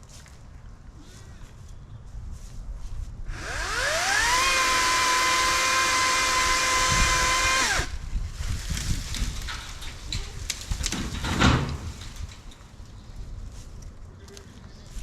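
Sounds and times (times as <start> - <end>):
electric chainsaw motor whine: 3.3 - 7.9.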